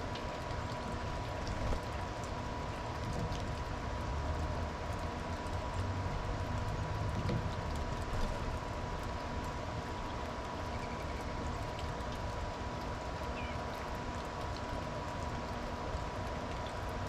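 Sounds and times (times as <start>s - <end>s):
low rumble and hiss: 0.0s - 17.0s.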